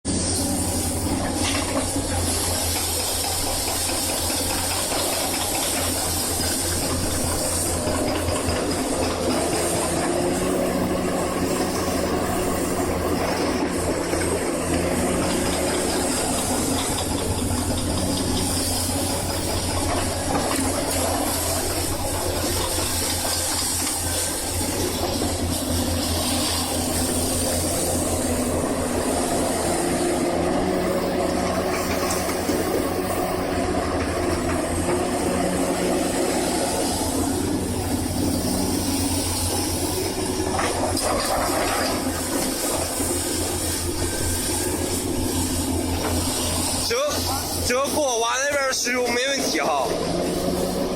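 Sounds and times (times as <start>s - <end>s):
diesel engine running: 0.1s - 50.9s.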